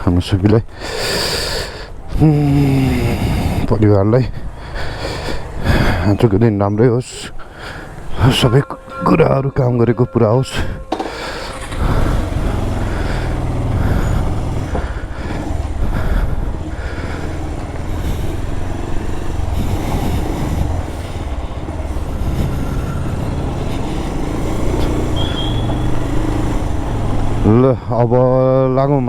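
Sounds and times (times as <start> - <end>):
traffic low rumble: 0.0 - 29.0
short high tone: 8.1 - 12.0.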